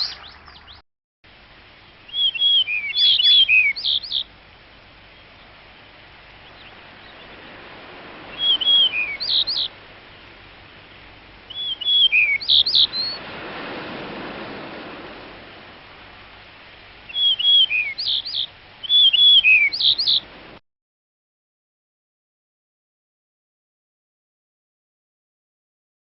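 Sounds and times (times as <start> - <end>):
songbird singing: 0.0 - 0.8, 1.6 - 13.8, 14.4 - 20.5.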